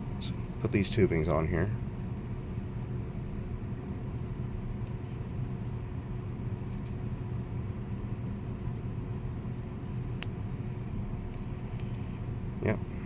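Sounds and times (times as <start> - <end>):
low background hum: 0.0 - 13.0
clicks of wire leads handled: 9.8 - 12.1.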